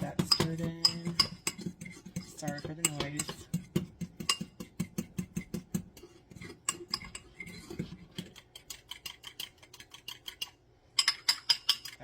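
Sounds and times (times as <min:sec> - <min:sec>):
fork clinking against a bowl: 0:06.4 - 0:07.6, 0:08.2 - 0:12.0.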